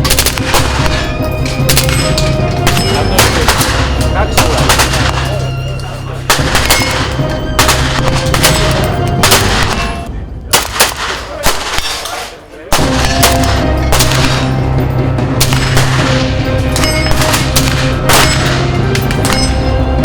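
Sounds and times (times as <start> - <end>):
loud gunfire-like bangs: 0.0 - 5.6, 6.3 - 20.0
background music: 0.0 - 20.0.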